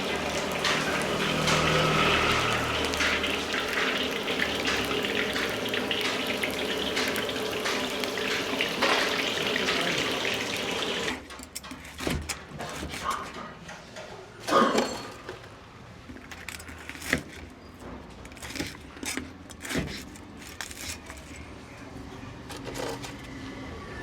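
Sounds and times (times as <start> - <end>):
hot wok hissing: 0.0 - 11.1.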